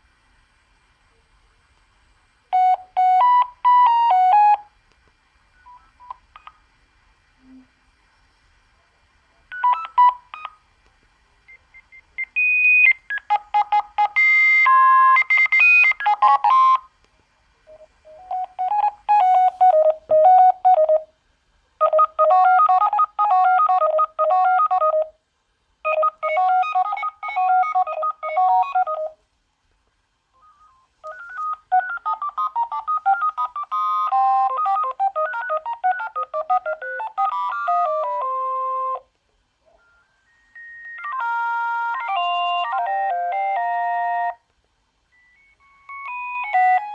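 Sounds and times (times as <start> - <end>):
phone ringtones beeping melodies: 2.5 - 4.7, 12.2 - 16.9, 17.7 - 21.1, 21.8 - 25.1, 25.9 - 29.2, 30.4 - 39.0, 39.7 - 44.4, 45.1 - 46.9.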